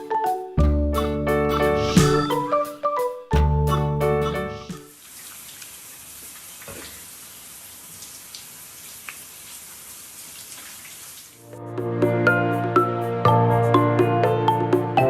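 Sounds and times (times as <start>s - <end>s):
music: 0.0s - 4.9s, 11.4s - 15.0s.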